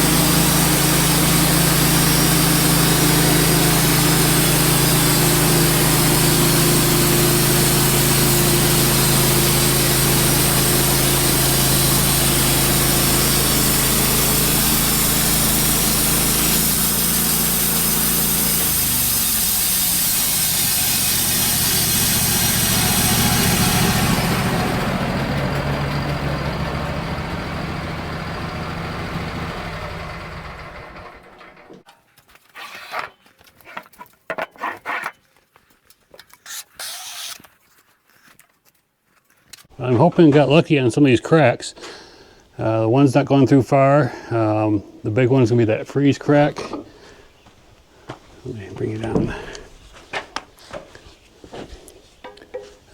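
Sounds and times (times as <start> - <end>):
band sawmill cutting log: 0.0 - 31.9, 36.5 - 37.5.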